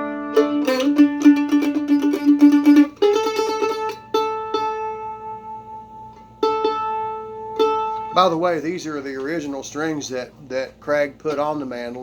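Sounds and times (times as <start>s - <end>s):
mandolin plucked notes ringing: 0.0s - 9.0s
mandolin tremolo picking: 0.0s - 9.0s.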